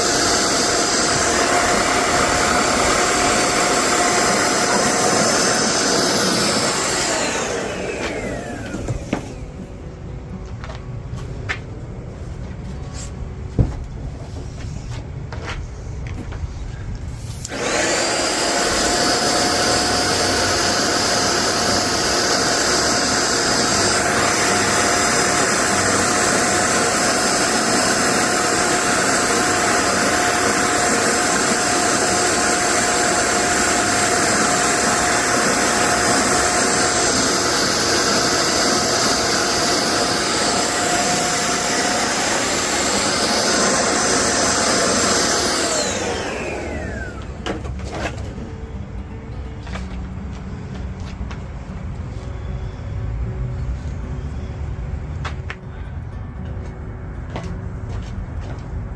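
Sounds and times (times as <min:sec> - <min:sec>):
electric motor whining: 0:00.0 - 0:09.8, 0:17.4 - 0:47.5.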